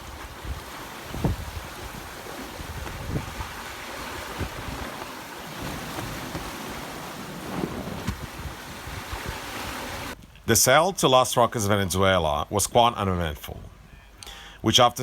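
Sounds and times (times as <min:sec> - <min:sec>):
sea water rushing: 0:00.0 - 0:10.2
wind buffeting microphone: 0:00.0 - 0:10.2
wind: 0:00.0 - 0:15.0.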